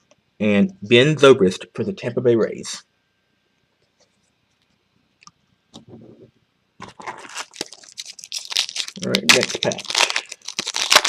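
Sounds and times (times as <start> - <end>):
foil wrapper crinkling: 6.8 - 11.0.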